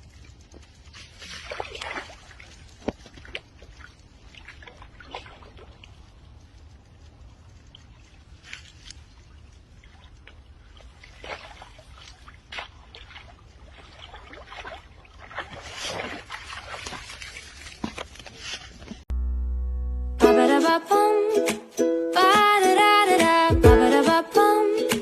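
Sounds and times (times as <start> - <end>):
water sloshing and splashing: 0.0 - 19.0.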